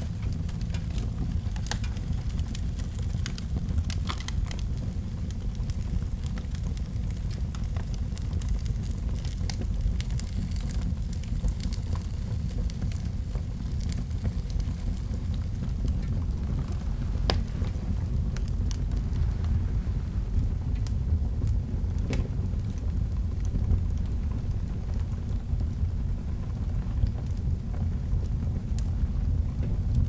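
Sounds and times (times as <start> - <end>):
fire crackling and popping: 0.0 - 30.0
large fire rumbling: 0.0 - 30.0.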